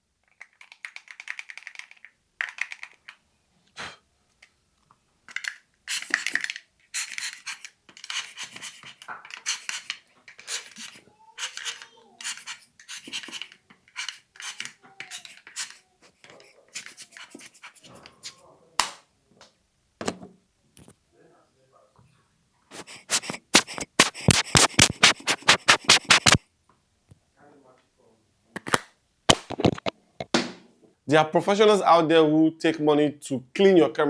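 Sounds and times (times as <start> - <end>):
short hissing strokes: 10.5 - 13.4, 16.8 - 18.0, 22.7 - 26.4.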